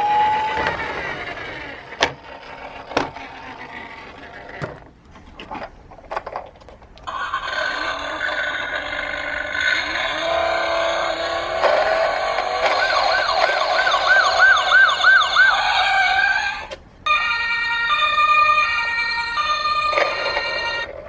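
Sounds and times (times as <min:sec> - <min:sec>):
toy electronic siren: 0:00.0 - 0:01.8, 0:07.1 - 0:21.0
toy cars clicking on track: 0:00.0 - 0:04.9, 0:05.5 - 0:21.0.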